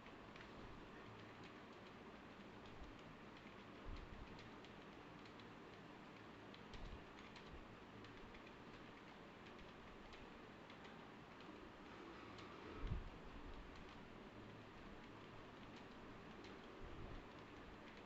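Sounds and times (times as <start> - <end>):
faint keyboard typing: 0.0 - 18.0.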